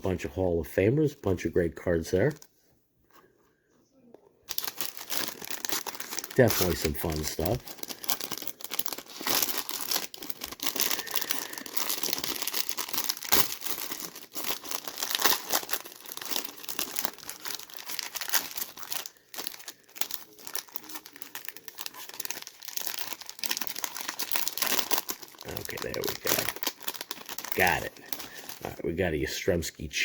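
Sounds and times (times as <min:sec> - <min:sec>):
plastic wrapper crinkling and tearing: 0:04.4 - 0:29.1.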